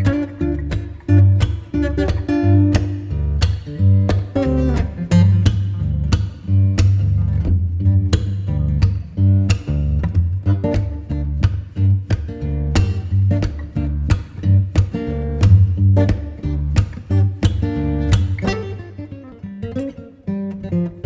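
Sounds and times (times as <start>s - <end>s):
steady bass: 0.0s - 18.5s
guitar plucked and strummed: 0.0s - 21.0s.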